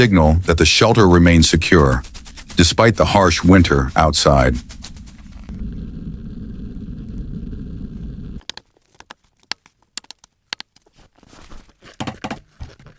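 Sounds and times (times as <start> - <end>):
steady low rumble: 0.0 - 8.4
sharp crackles and clicks: 0.3 - 10.7.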